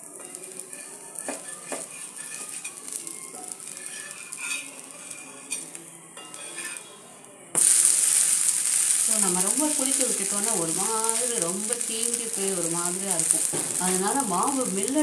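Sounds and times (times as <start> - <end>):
faint sizzle: 0.0 - 15.0
metal spatula scraping pan: 0.0 - 15.0.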